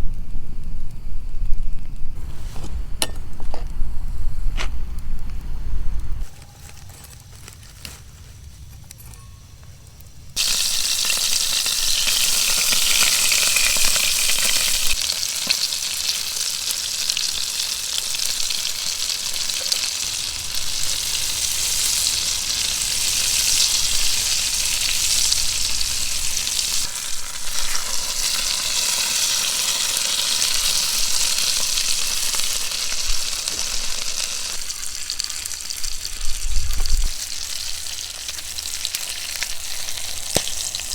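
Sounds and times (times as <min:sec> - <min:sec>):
food sizzling in a hot pan: 0:10.4 - 0:40.9.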